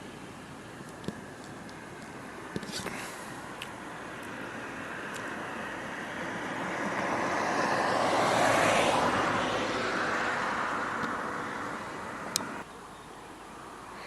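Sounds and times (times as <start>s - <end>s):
vehicle passing by: 2.2s - 12.6s.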